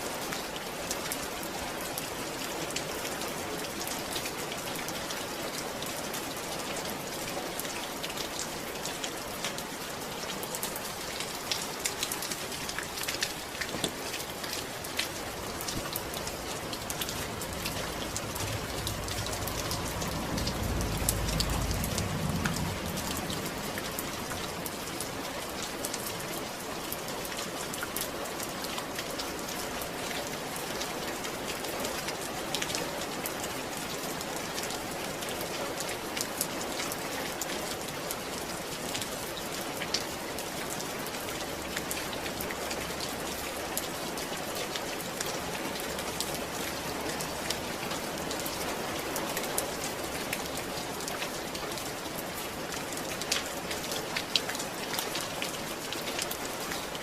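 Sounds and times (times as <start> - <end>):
steady rain falling: 0.0 - 57.0
raindrops ticking: 6.8 - 33.4, 40.7 - 57.0
low rumble: 15.2 - 25.0.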